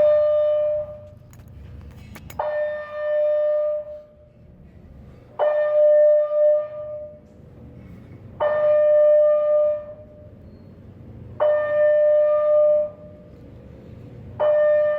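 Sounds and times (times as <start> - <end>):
fire alarm tone: 0.0 - 1.1, 2.4 - 4.2, 5.4 - 7.2, 8.4 - 10.8, 11.4 - 13.2, 14.4 - 14.9.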